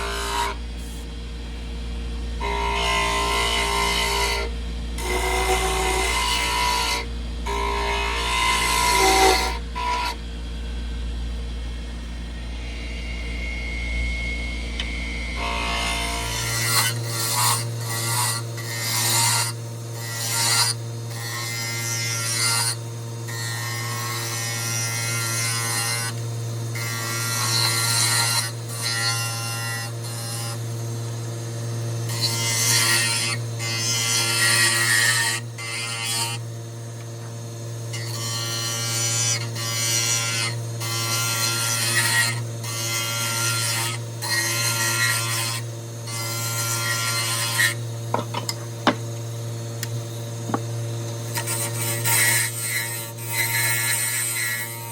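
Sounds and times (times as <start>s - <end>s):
wood lathe motor hum: 0.0s - 54.9s
cutting tool scraping wood: 48.1s - 49.2s.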